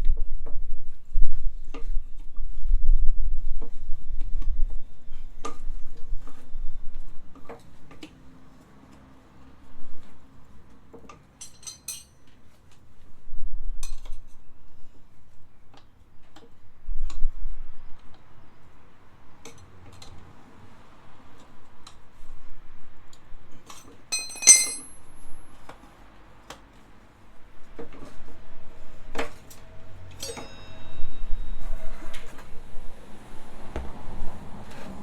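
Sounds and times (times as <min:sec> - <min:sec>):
metal tools clinking: 0:11.4 - 0:12.1, 0:24.1 - 0:25.3.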